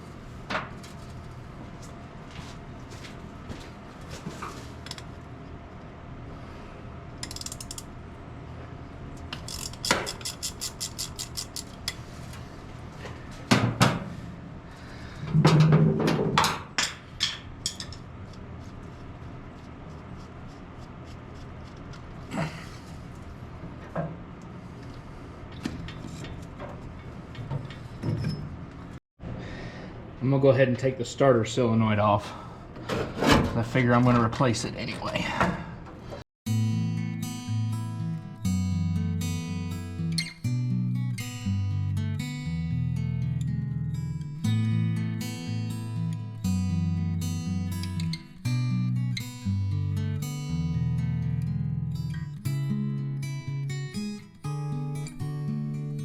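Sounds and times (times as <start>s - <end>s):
ratchet wrench clicking: 7.2s - 7.8s, 9.4s - 12.0s.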